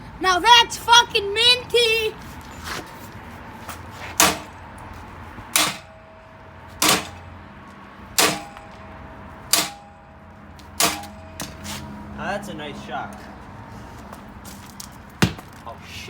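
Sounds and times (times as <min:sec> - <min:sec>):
hammer striking metal frame: 0:04.1 - 0:04.6, 0:05.5 - 0:07.3, 0:08.1 - 0:11.8.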